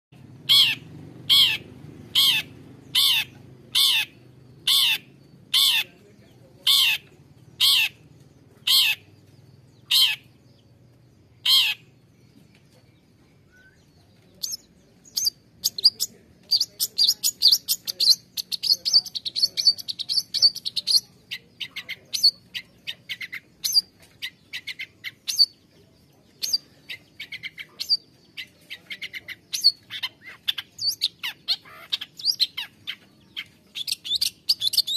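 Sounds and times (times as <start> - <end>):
high-pitched chattering birdsong: 0.2 - 34.9
bird giving harsh calls: 0.3 - 10.4, 11.4 - 12.0, 26.4 - 34.9.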